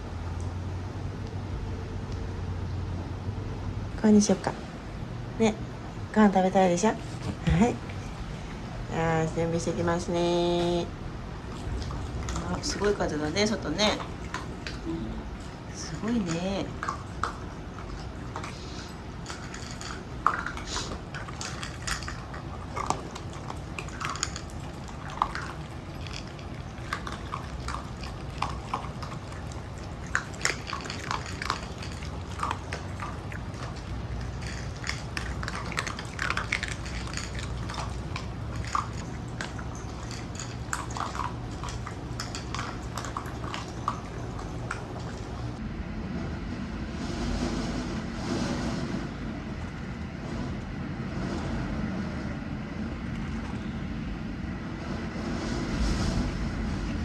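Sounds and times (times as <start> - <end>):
dry dog food crunching: 15.4 - 45.6
strong wind rumbling: 45.6 - 57.0.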